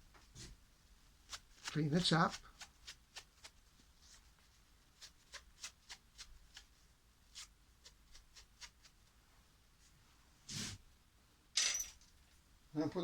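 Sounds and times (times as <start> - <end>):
faint scratchy strokes: 1.3 - 10.8.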